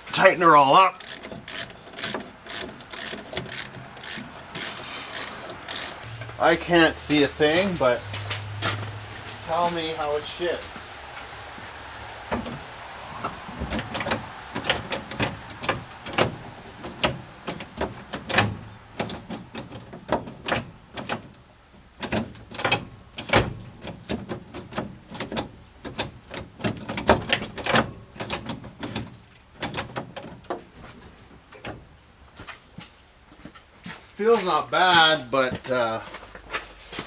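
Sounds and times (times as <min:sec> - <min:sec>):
gear shift linkage clicking and clunking: 0:01.0 - 0:06.6, 0:13.6 - 0:31.9.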